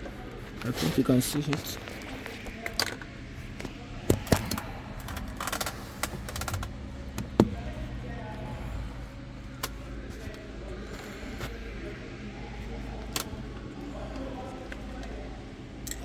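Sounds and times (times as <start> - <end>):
probes and wiring clicking: 1.4 - 8.1.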